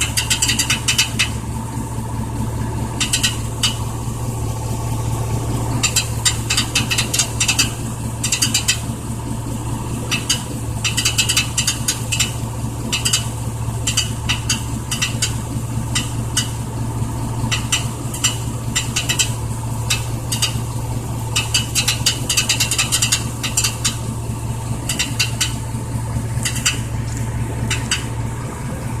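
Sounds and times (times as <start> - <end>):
rattle of quick clicks: 0.0 - 1.4, 2.9 - 3.9, 5.7 - 8.9, 10.0 - 16.6, 17.4 - 24.1, 24.8 - 25.6, 26.3 - 28.2
truck engine humming: 0.0 - 29.0.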